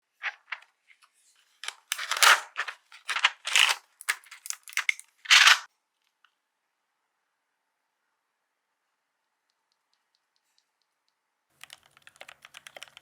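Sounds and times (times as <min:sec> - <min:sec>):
mechanical keyboard keystroke clacks: 0:11.6 - 0:13.0.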